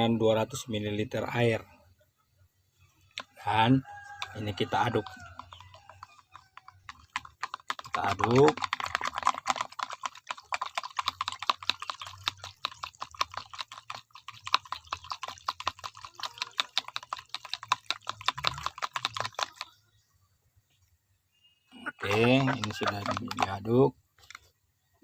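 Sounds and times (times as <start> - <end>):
utensil clicking against container: 4.1 - 19.7, 22.0 - 24.5.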